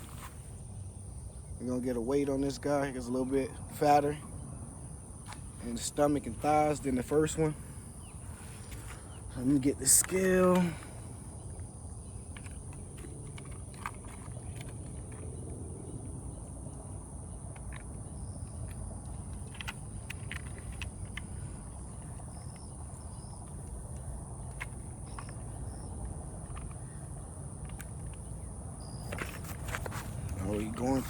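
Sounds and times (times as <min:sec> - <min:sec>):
insect drone: 0:00.0 - 0:31.0
clicks and knocks from handling gear: 0:17.5 - 0:31.0.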